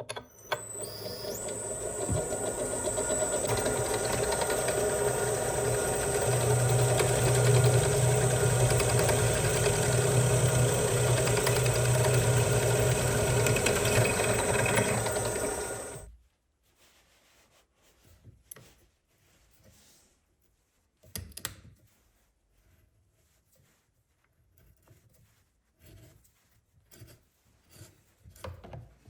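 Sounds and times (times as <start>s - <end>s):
power tool motor humming: 0.5s - 16.1s.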